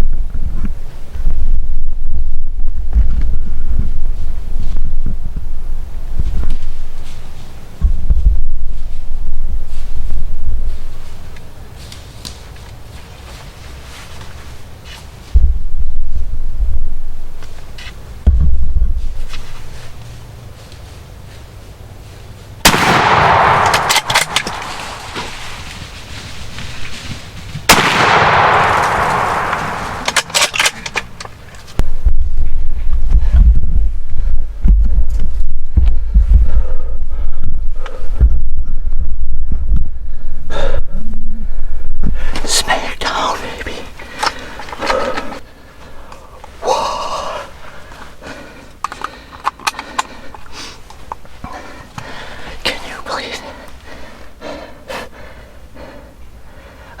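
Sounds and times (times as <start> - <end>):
low rumbling thump: 7.8 - 8.8, 15.3 - 17.2, 18.2 - 19.2, 31.8 - 40.0
rifle shots echoing: 22.6 - 25.9, 27.7 - 31.2
sharp clicks: 22.7 - 25.4, 27.7 - 31.9
person breathing hard: 35.9 - 38.2, 39.9 - 42.4, 43.9 - 57.0.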